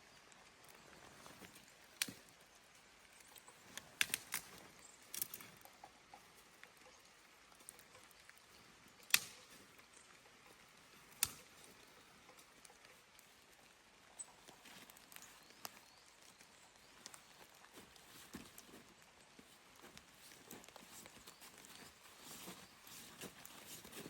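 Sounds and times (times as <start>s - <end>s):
faint steady hiss: 0.0s - 24.0s
sharp snaps and knocks: 1.2s - 2.3s, 3.3s - 6.0s, 9.0s - 9.9s, 11.1s - 12.9s.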